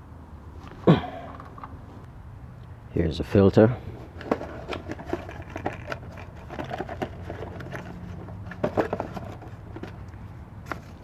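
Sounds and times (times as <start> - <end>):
plastic parts clicking and knocking: 1.2 - 1.8, 4.1 - 10.9.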